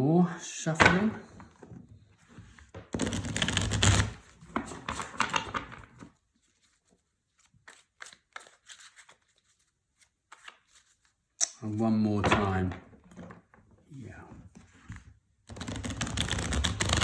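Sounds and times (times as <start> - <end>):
cards being shuffled: 2.6 - 12.5, 14.6 - 17.0.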